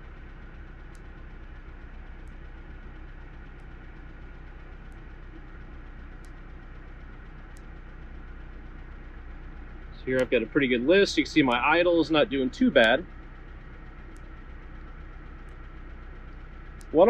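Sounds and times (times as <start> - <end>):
car engine idling roughly: 0.0 - 17.0.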